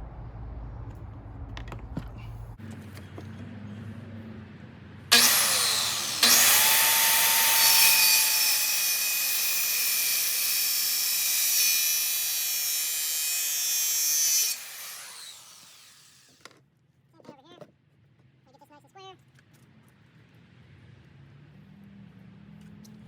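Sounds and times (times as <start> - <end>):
circular saw cutting wood: 5.1 - 16.4.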